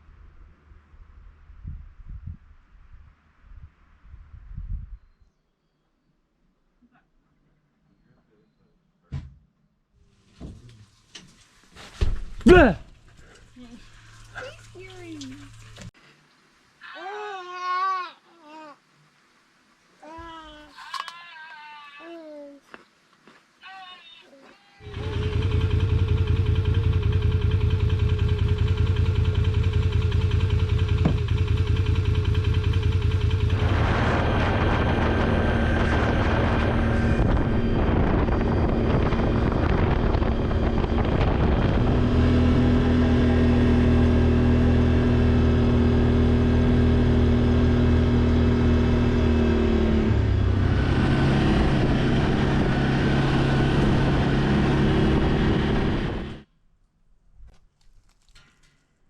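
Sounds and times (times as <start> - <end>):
vehicle engine running: 13.1 - 15.9, 24.8 - 56.5.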